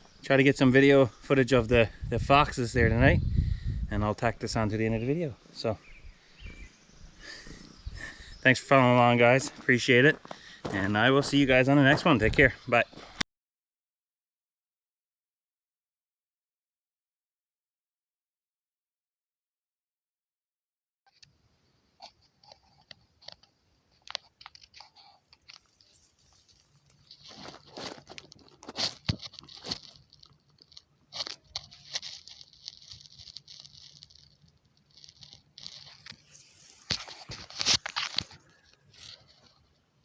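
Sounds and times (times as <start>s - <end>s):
foxes crunching and tearing: 22.4s - 39.7s.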